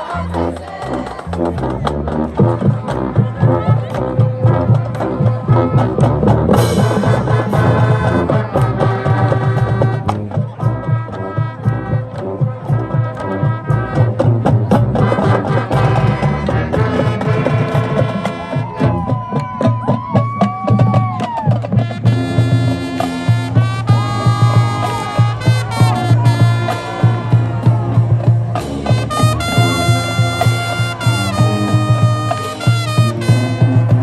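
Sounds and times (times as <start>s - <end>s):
marching band playing: 0.0s - 34.0s
sliding pitch instrument line: 21.7s - 34.0s.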